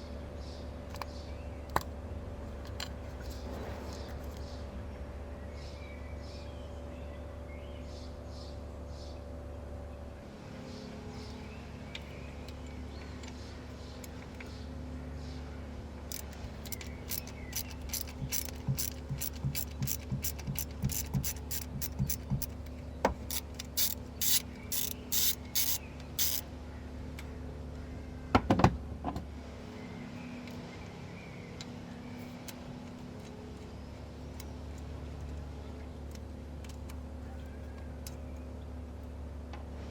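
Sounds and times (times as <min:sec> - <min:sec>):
hand ratchet clicking: 0:16.1 - 0:26.4.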